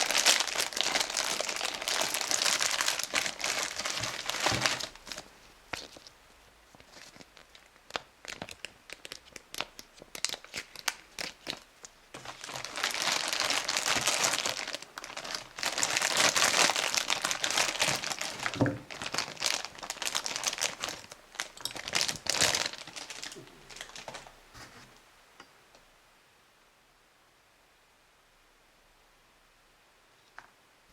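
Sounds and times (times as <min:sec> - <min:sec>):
packaging crinkling: 0:00.0 - 0:24.4.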